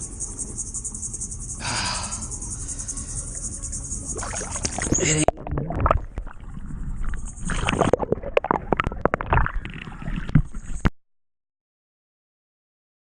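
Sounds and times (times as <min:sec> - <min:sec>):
water sloshing and gurgling: 0:04.0 - 0:10.9.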